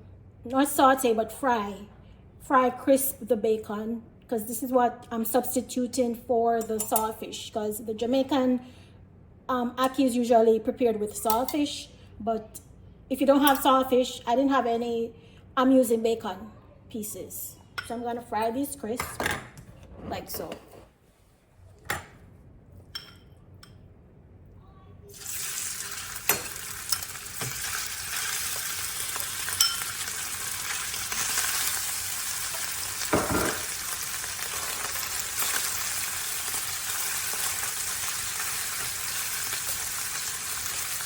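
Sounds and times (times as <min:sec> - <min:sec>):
bacon sizzling in a pan: 0:25.1 - 0:41.0.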